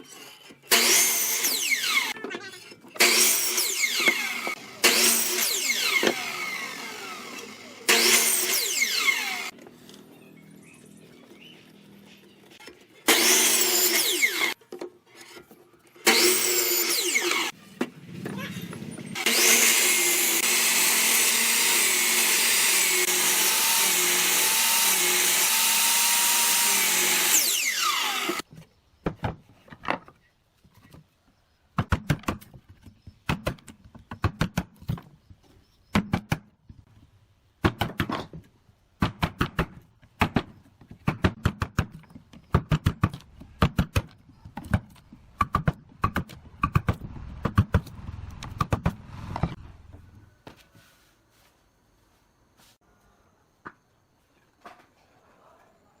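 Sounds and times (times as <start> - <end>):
power tool running: 3.0 - 9.5, 13.1 - 14.6, 16.0 - 17.5, 19.2 - 28.4
power tool winding down whine: 3.0 - 9.5, 16.1 - 17.5, 19.2 - 28.4.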